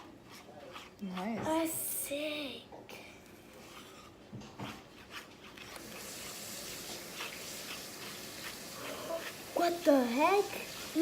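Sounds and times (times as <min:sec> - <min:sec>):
slime rubbing: 0:00.0 - 0:02.0, 0:03.5 - 0:11.0
light taps and scrapes: 0:03.5 - 0:06.0.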